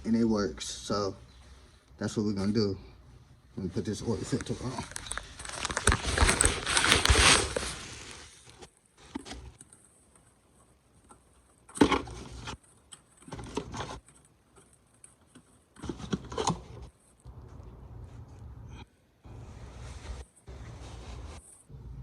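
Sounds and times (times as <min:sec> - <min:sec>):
oil filter rubbing and scraping: 0:19.3 - 0:21.7.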